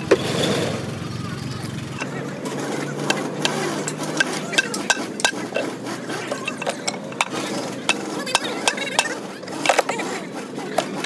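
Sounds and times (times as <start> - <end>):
metal tools clinking: 1.9 - 10.2.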